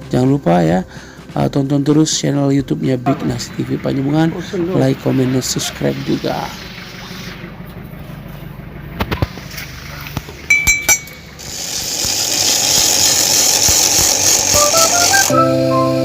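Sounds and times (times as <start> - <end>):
hissing noise: 4.8 - 7.7, 11.5 - 16.0
metallic clinks of tools: 10.5 - 11.4.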